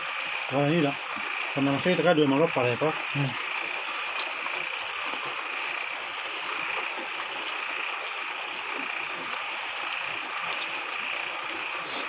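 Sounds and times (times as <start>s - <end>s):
forest hiss: 11.4s - 12.0s.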